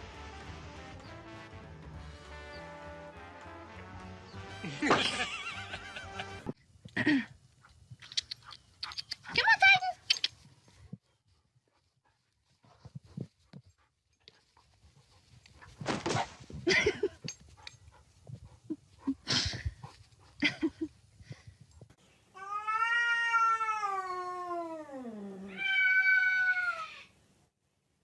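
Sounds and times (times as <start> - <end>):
cat yowling: 22.4 - 27.1.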